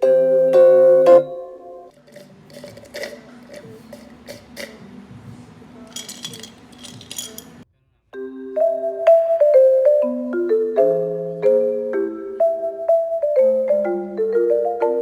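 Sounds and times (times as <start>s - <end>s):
soft music: 0.0s - 15.0s
light clinks and taps: 5.9s - 7.6s.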